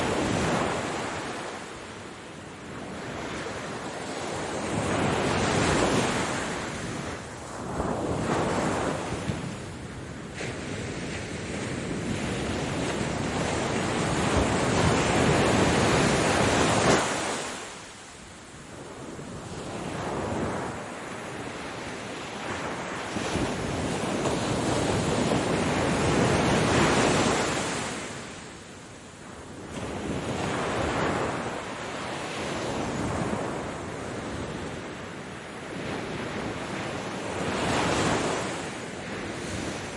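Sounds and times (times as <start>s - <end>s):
ocean waves breaking: 10.4s - 28.6s.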